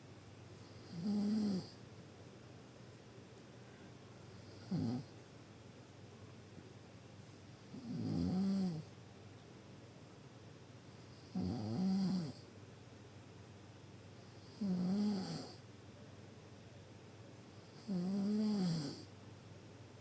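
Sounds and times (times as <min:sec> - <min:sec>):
deep snoring: 0:00.7 - 0:01.8, 0:04.4 - 0:05.1, 0:07.7 - 0:08.9, 0:11.3 - 0:12.4, 0:14.4 - 0:15.6, 0:17.8 - 0:19.1.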